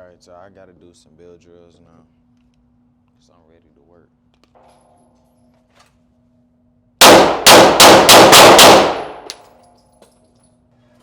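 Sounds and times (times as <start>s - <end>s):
rapid pistol shots echoing: 7.0s - 9.4s.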